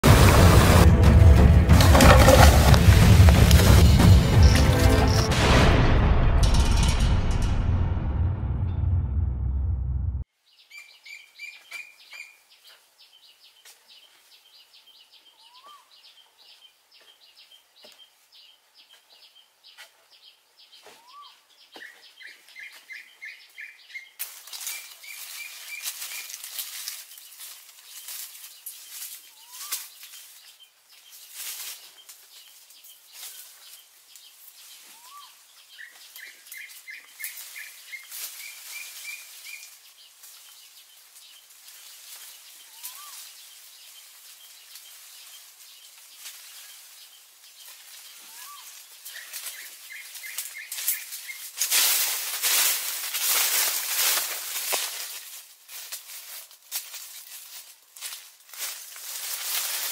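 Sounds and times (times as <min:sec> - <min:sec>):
birds chirping: 0:01.9 - 0:05.3, 0:10.5 - 0:51.6.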